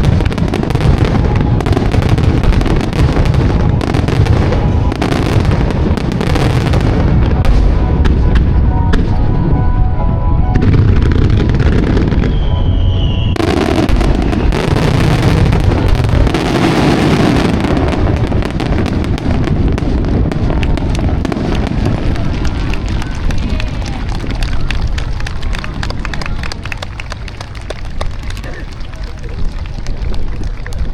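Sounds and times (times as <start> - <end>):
fireworks crackling and bangs: 0.0 - 9.2, 10.6 - 30.9
fireworks booming: 0.0 - 9.5, 10.5 - 30.3
firework whistle: 10.6 - 18.0.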